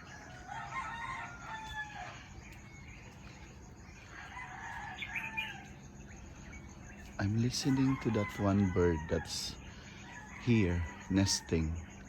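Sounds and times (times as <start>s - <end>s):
rooster crowing: 0.0s - 3.0s, 3.8s - 5.9s, 7.2s - 12.0s.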